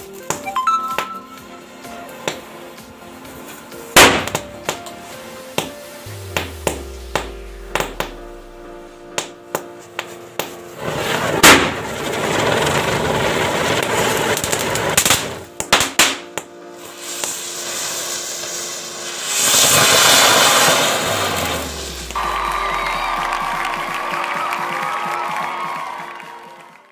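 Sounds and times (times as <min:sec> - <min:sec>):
firecrackers banging and crackling: 0:00.0 - 0:26.0
background music: 0:00.0 - 0:26.9
firework hissing spray: 0:01.6 - 0:08.5, 0:10.6 - 0:15.5, 0:16.7 - 0:24.2.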